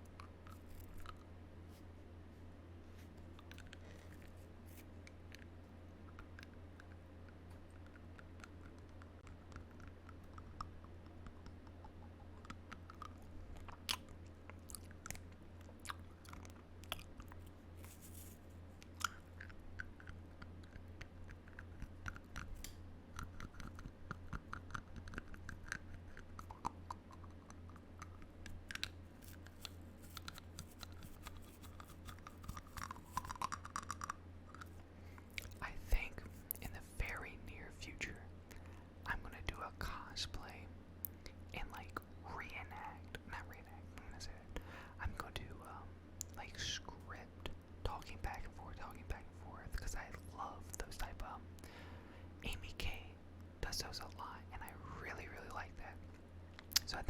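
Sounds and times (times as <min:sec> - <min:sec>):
biting and chewing hard object: 0:00.0 - 0:01.3, 0:03.4 - 0:35.6
steady low hum: 0:00.0 - 0:57.0.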